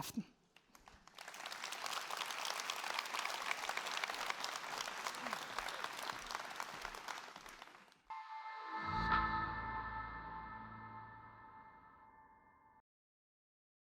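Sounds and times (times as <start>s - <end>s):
audience applauding: 0.5s - 8.3s
sustained ringing music tones: 8.1s - 12.7s.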